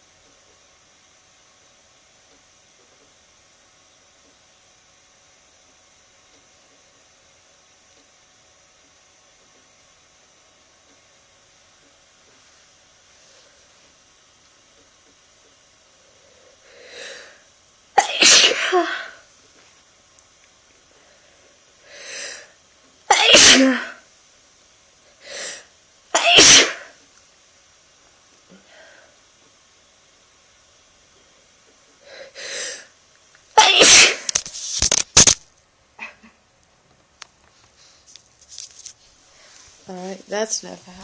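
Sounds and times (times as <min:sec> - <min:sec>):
recording hiss: 0:15.8 - 0:19.8, 0:20.5 - 0:35.4, 0:36.9 - 0:41.0
person sneezing: 0:18.0 - 0:19.2, 0:23.1 - 0:24.0, 0:25.3 - 0:27.0, 0:33.6 - 0:34.4.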